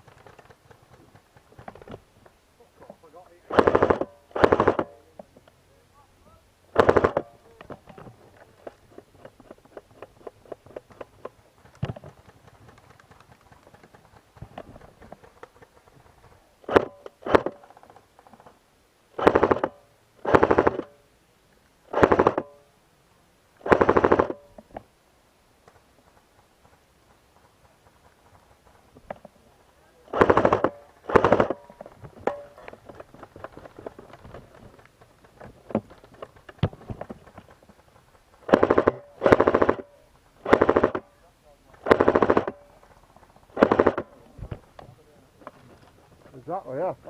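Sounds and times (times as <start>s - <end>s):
airsoft gun full-auto bursts: 3.5s - 4.9s, 6.7s - 7.3s, 19.2s - 20.9s, 21.9s - 22.5s, 23.6s - 24.5s, 30.1s - 31.7s, 38.4s - 41.1s, 41.8s - 42.7s, 43.5s - 44.1s.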